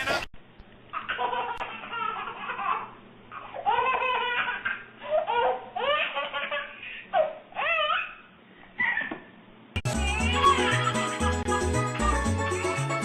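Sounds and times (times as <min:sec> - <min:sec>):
high-pitched laughing: 0:09.9 - 0:12.3.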